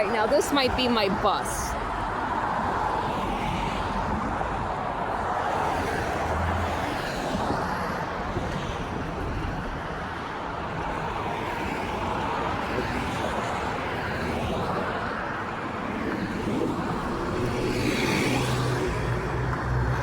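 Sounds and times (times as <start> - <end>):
road traffic noise: 0.0 - 20.0.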